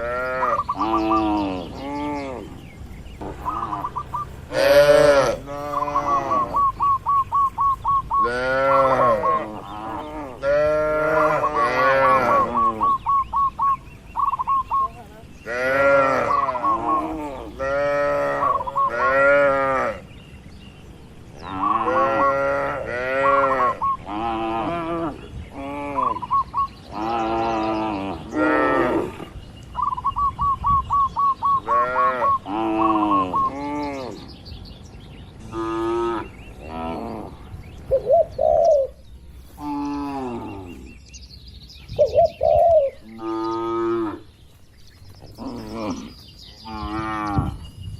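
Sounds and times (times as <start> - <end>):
cattle mooing: 4.5 - 6.8, 8.2 - 13.0, 15.5 - 20.0, 21.5 - 26.2.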